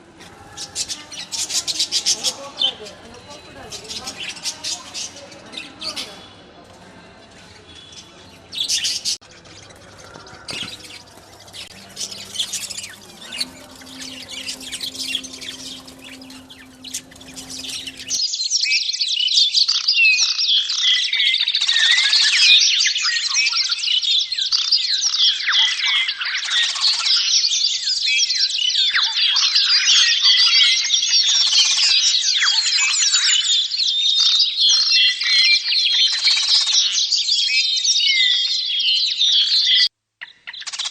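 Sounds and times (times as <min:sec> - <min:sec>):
caged birds chirping: 0:00.0 - 0:18.4
low hum: 0:10.8 - 0:18.2.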